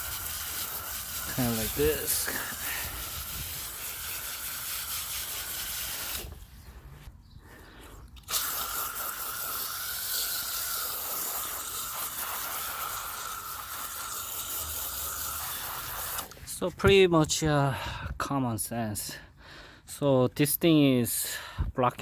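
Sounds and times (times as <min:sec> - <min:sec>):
water spraying from hose: 0:00.0 - 0:06.4, 0:08.2 - 0:16.4.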